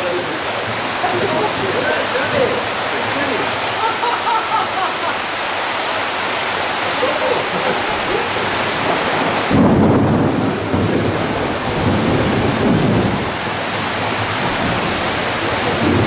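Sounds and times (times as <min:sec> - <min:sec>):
heavy rain falling: 0:00.0 - 0:16.0
rumble of thunder: 0:08.5 - 0:16.0.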